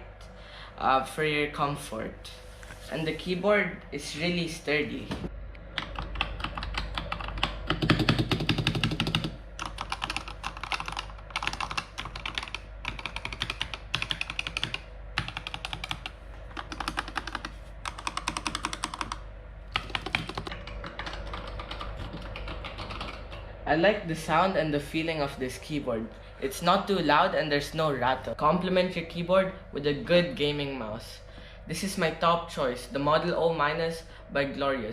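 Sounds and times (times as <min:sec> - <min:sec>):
keyboard typing: 0:05.7 - 0:23.5.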